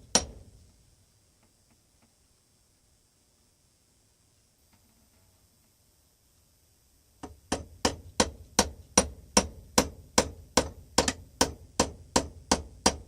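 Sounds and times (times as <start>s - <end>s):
hammer tapping metal pin: 0.0s - 0.5s, 7.2s - 13.0s.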